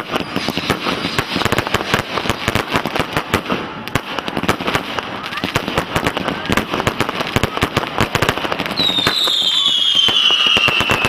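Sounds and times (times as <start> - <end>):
continuous fireworks crackle: 0.0 - 11.0
fireworks cracking and banging: 0.0 - 11.0.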